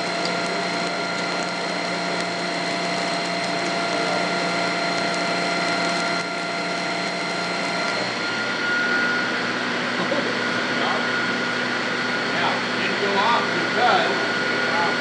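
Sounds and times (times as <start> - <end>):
lathe bit cutting aluminum: 0.0 - 11.6
metal lathe machine whine: 0.0 - 15.0.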